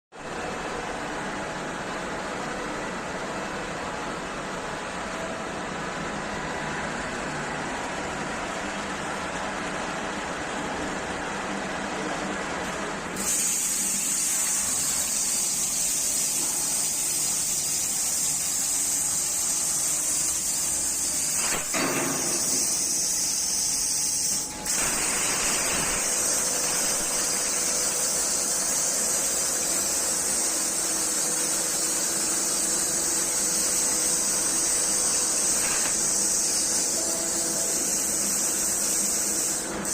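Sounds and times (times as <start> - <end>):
plasma torch arc hissing: 13.2 - 39.9.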